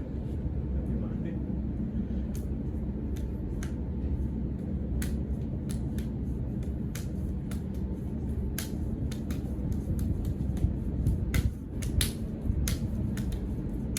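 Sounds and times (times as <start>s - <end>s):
low rumble: 0.0s - 13.9s
martial arts hand strikes slapping: 2.3s - 3.8s, 4.9s - 13.9s.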